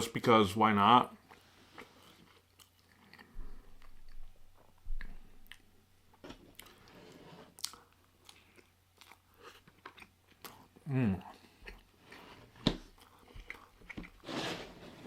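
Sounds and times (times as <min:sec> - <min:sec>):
chewing and biting sandwich: 0:01.2 - 0:04.4, 0:07.6 - 0:14.2.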